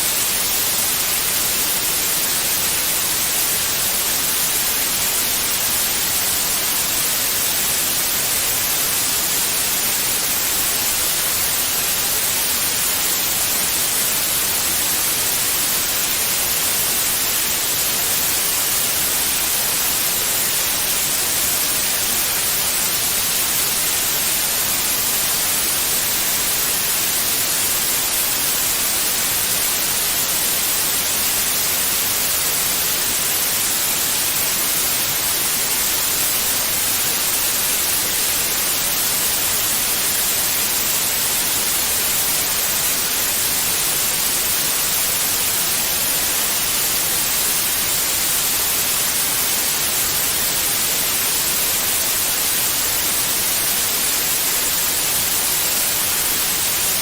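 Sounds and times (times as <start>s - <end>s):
steady white noise hiss: 0.0s - 57.0s.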